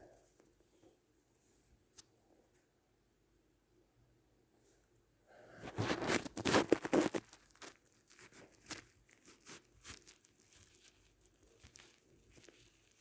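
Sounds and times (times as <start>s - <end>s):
crinkling and crackling: 5.5s - 13.0s.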